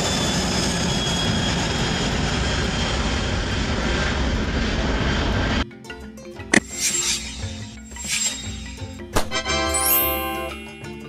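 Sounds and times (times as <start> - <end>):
jet engines running: 0.0 - 5.6.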